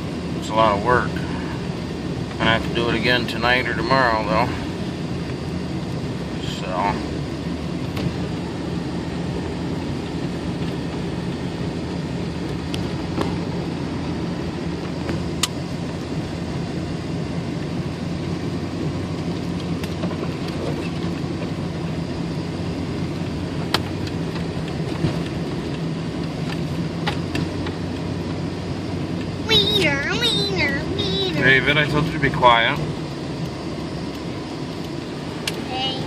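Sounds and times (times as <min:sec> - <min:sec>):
low engine hum: 0:00.0 - 0:36.0
road and tyre noise: 0:00.0 - 0:36.0.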